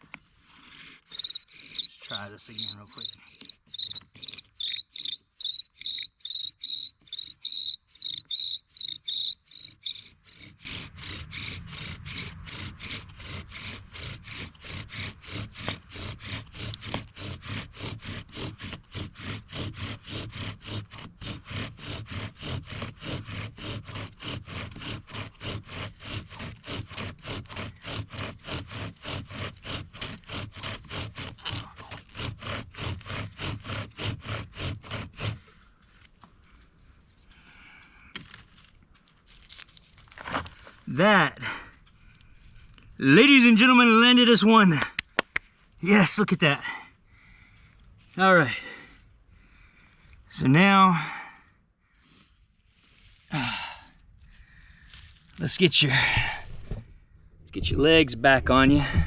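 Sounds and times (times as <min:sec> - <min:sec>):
bow drill squeaking and grinding: 0:00.0 - 0:36.3.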